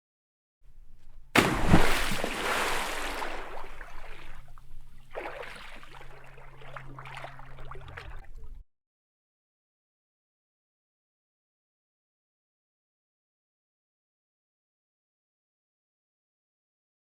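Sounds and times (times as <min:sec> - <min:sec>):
low hum: 0:00.7 - 0:08.6
light drips and sloshing: 0:00.8 - 0:08.6
water splashing into bowl: 0:01.4 - 0:08.5.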